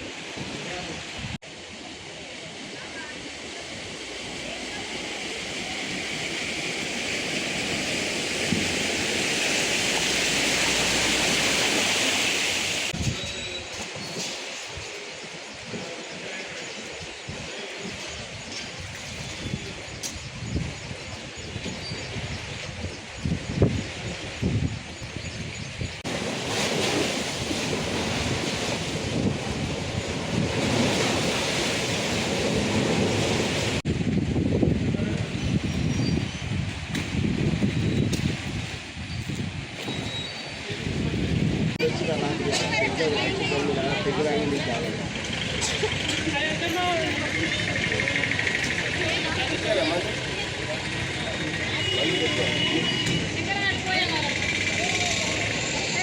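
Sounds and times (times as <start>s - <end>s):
river rushing: 0.0s - 18.9s, 26.0s - 33.9s
floodwater rushing: 0.0s - 56.0s
wind buffeting microphone: 16.7s - 52.0s.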